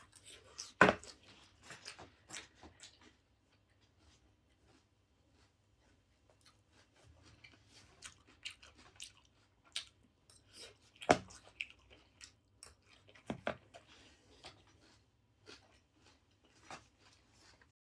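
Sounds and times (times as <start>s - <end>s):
person chewing: 0.0s - 17.7s.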